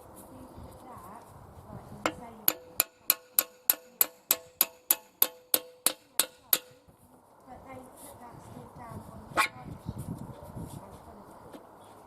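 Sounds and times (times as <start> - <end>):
hammer striking metal: 2.1 - 6.8.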